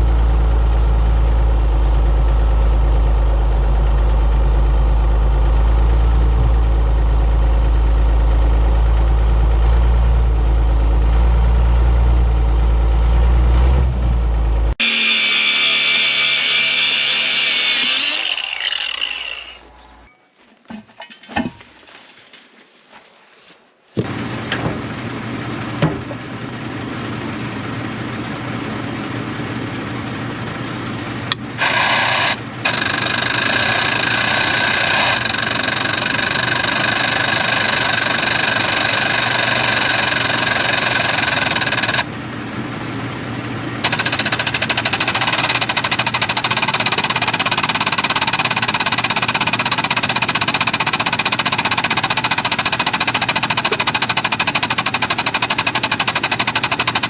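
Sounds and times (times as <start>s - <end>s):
power cutting tool cutting rubber: 14.7s - 19.8s, 31.6s - 42.0s, 43.8s - 57.0s.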